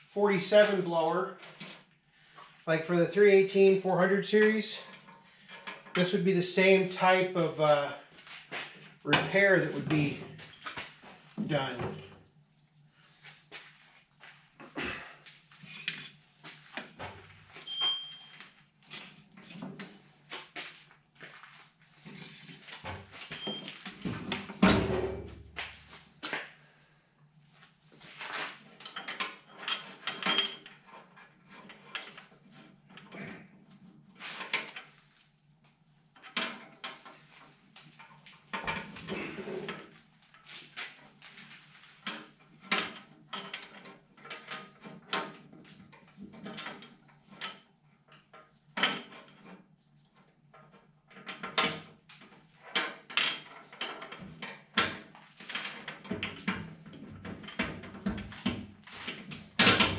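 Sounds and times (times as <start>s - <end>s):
metallic clinks of tools and bolts: 17.6s - 19.2s, 28.8s - 30.8s.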